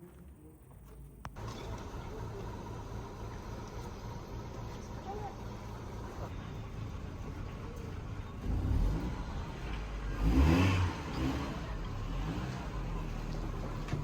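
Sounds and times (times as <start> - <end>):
vehicle engine revving: 7.1 - 14.0.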